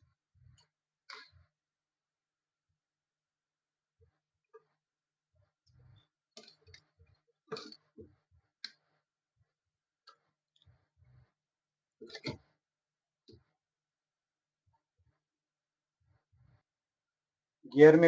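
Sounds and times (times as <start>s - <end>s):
faint plastic clicks and knocks: 0.4s - 1.6s, 4.1s - 13.7s.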